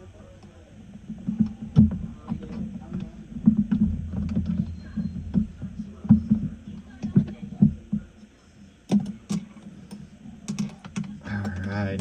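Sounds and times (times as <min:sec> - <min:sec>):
low hum: 0:00.0 - 0:08.9.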